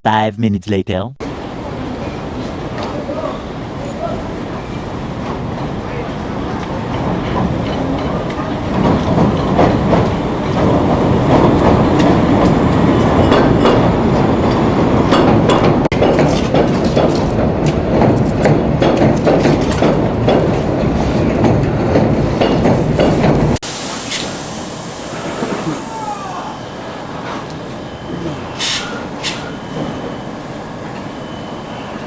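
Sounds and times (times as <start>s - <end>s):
wheels clacking over rail joints: 1.2s - 23.6s
subway train running on rails: 1.2s - 32.0s.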